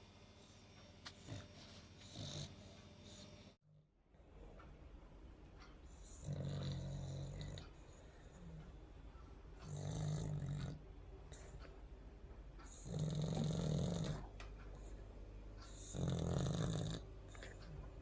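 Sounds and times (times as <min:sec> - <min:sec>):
dog snoring: 0:00.4 - 0:03.6, 0:05.9 - 0:08.8, 0:09.6 - 0:11.6, 0:12.6 - 0:15.0, 0:15.7 - 0:17.9
dog breathing: 0:05.8 - 0:11.8, 0:12.6 - 0:17.9.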